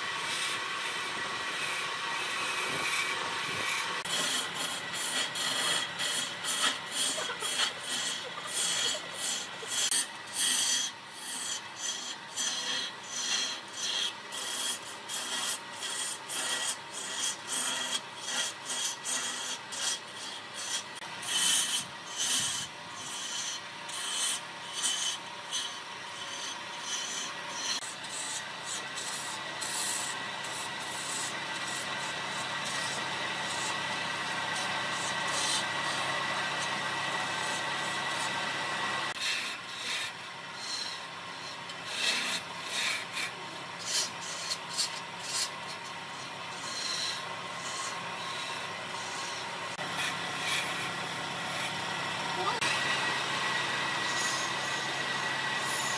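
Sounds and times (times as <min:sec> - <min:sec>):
abrasive rubbing on hard surface: 0:00.0 - 0:36.8.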